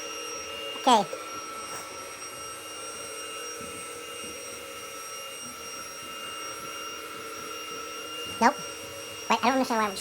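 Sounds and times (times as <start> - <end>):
robot vacuum motor whine: 0.0 - 10.0.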